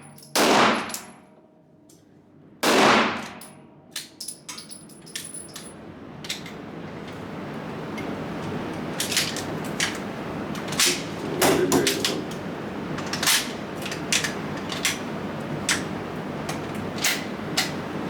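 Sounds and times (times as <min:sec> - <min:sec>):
pistol shots: 0:00.3 - 0:01.1, 0:02.6 - 0:03.4.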